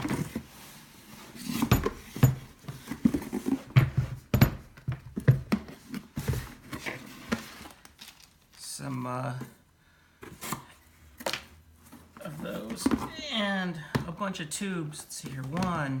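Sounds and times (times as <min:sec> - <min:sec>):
packaging rustling and crinkling: 0:06.0 - 0:08.7.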